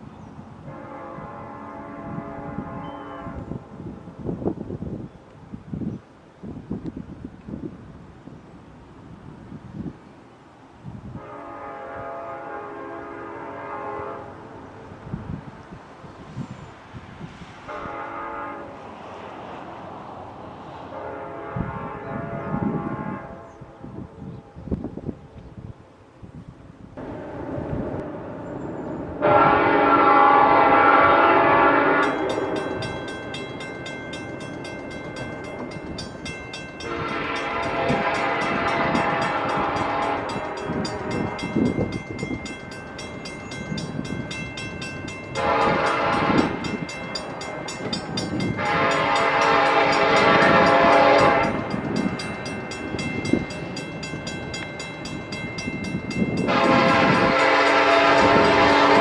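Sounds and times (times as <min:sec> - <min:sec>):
train rolling noise: 0:00.0 - 0:59.0
locomotive air horn blasts: 0:00.6 - 0:03.6, 0:11.2 - 0:14.6, 0:17.6 - 0:18.8, 0:20.9 - 0:24.2, 0:29.2 - 0:33.3, 0:36.7 - 0:42.0, 0:45.3 - 0:52.5, 0:56.3 - 0:59.0.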